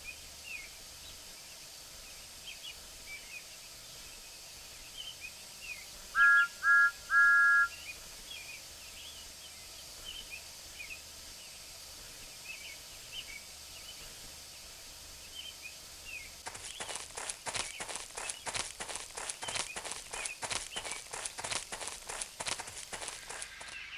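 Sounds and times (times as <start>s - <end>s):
birds chirping: 5.8s - 9.4s, 15.3s - 23.9s
steam locomotive whistle: 6.2s - 7.8s
sharp noisy strokes: 16.4s - 23.9s.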